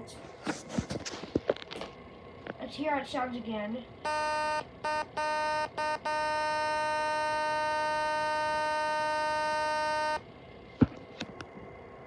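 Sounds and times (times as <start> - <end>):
buzzing electronic tone: 4.0 - 10.2.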